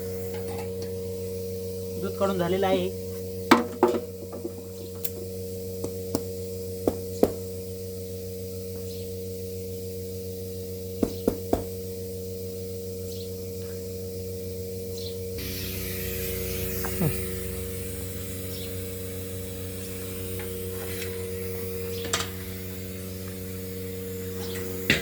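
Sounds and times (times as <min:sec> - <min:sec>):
hiss: 0:15.4 - 0:25.0
milking machine humming: 0:15.4 - 0:25.0.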